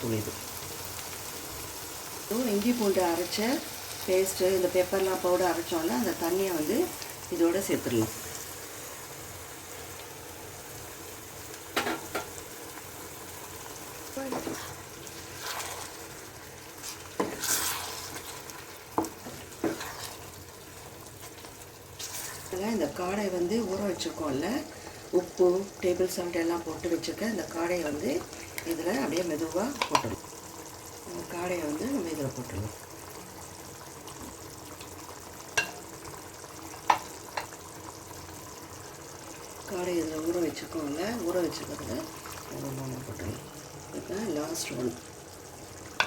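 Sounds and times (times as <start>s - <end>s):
gravy sizzling in a pan: 0.0s - 46.0s
spoon knocking against pan: 29.8s - 30.2s, 35.6s - 35.8s.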